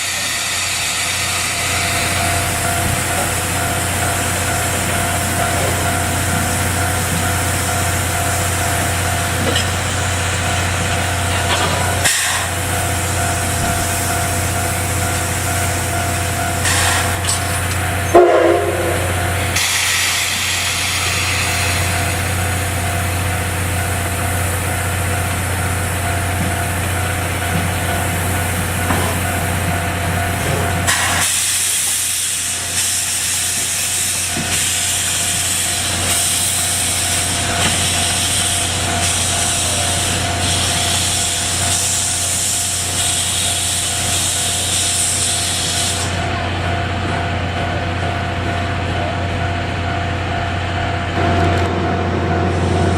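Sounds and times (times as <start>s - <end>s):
steam hissing: 0.0s - 46.3s
steam locomotive low hum: 0.0s - 52.9s.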